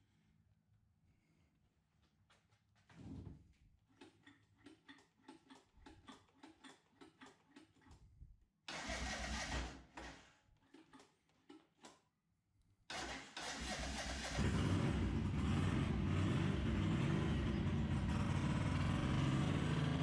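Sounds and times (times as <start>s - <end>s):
motorcycle engine cranking: 3.9s - 8.0s, 8.7s - 12.0s, 12.9s - 15.4s
engine firing and running: 8.7s - 10.1s, 12.9s - 20.0s.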